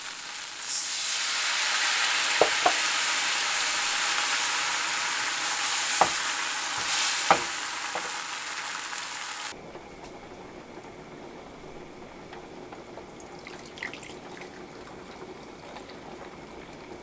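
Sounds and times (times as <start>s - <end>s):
faint hiss: 0.0s - 9.5s
food sizzling in hot oil: 0.0s - 9.6s.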